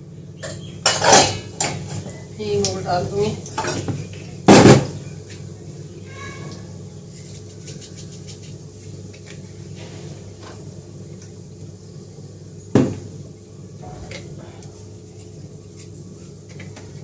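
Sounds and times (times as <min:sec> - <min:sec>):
steady low hum: 0:09.4 - 0:17.0.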